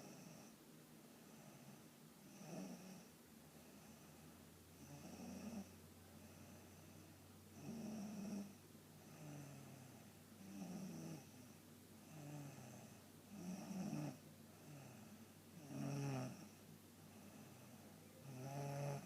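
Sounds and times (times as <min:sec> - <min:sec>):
person snoring: 0:12.0 - 0:16.6, 0:17.2 - 0:19.0.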